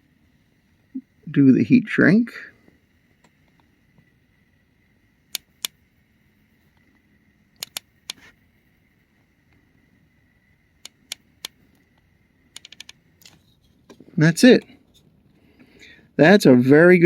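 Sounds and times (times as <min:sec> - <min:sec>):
faint high whine: 0:00.0 - 0:17.0
sharp clicks and taps: 0:07.6 - 0:08.2, 0:10.8 - 0:14.0.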